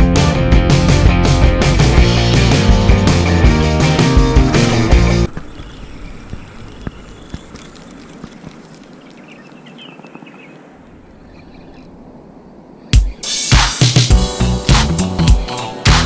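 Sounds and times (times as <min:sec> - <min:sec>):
steady outdoor noise: 0:01.0 - 0:16.0
high chirping call: 0:05.3 - 0:08.0.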